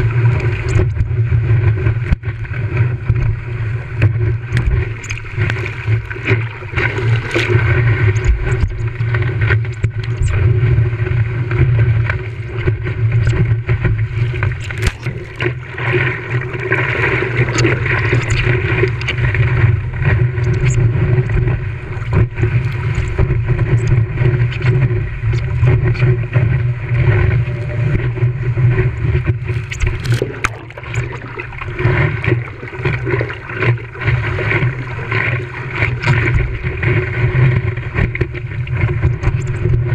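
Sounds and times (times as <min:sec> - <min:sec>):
surf: 0:00.0 - 0:39.9.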